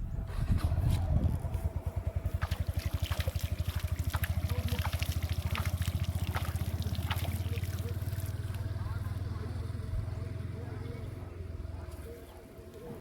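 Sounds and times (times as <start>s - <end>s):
water trickling and splashing: 1.1s - 10.4s.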